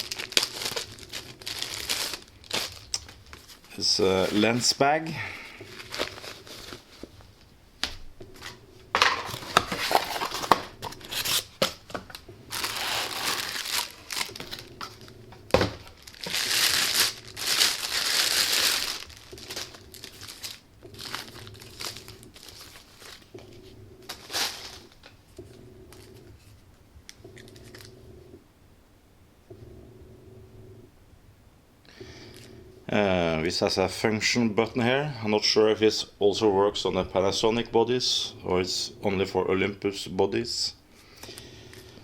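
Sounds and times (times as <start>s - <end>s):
wrapping crinkling and rustling: 0.0s - 7.5s, 8.4s - 25.3s, 27.4s - 27.9s.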